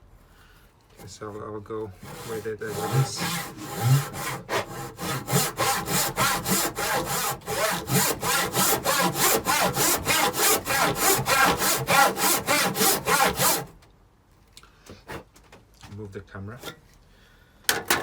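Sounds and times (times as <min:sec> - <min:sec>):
handsaw ripping timber: 0:01.9 - 0:13.8.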